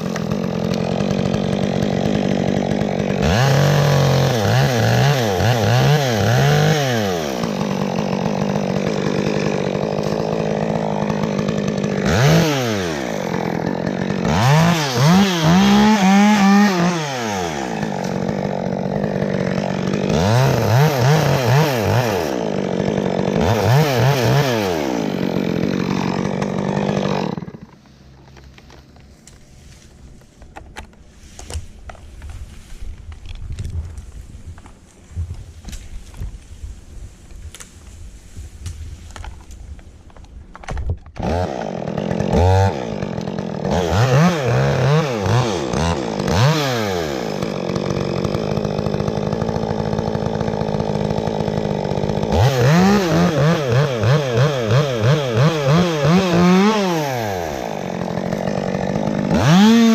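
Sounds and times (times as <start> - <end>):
chainsaw revving: 0.0 - 29.0, 41.2 - 59.9.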